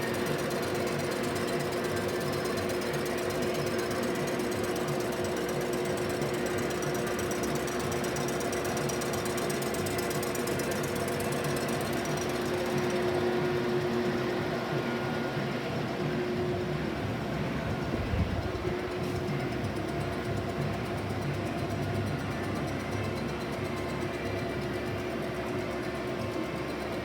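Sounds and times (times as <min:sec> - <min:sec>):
fast rattle of metal cutting: 0:00.0 - 0:14.3
machine tool humming: 0:00.0 - 0:27.0.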